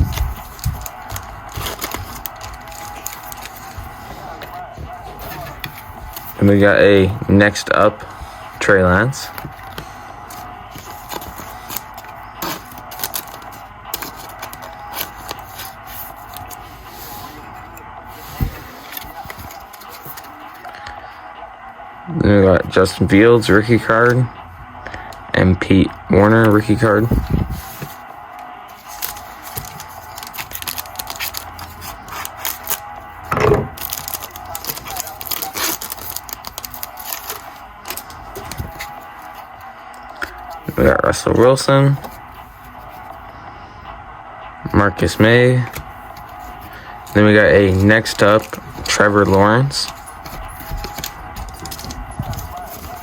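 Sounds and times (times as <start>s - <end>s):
wrapper crinkle: 0.0s - 6.6s, 9.2s - 16.7s, 28.7s - 40.9s, 46.1s - 53.0s
cards clicking and rustling: 0.0s - 21.0s, 26.2s - 28.1s, 28.7s - 43.2s, 45.0s - 53.0s.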